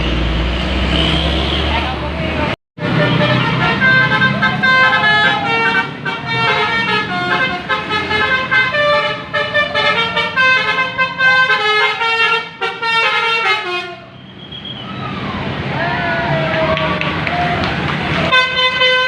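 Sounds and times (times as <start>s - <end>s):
multi-tone air horns playing tune: 2.9s - 14.1s, 18.3s - 19.0s.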